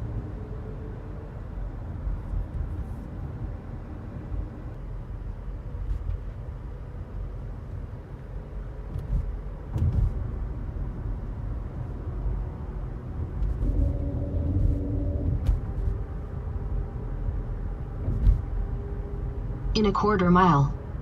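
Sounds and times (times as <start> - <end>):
car cabin road rumble: 0.0 - 21.0.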